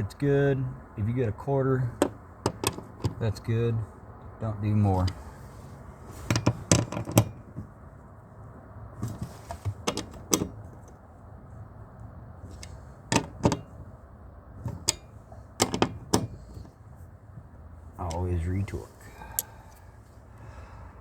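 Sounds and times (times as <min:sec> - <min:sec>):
hand tools clicking and knocking: 0:12.6 - 0:13.8, 0:14.7 - 0:16.7.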